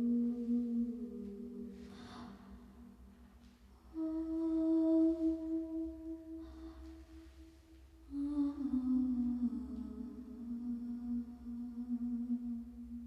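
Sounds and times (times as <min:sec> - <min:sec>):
person humming: 0:00.0 - 0:02.9, 0:03.8 - 0:06.7, 0:08.1 - 0:13.0.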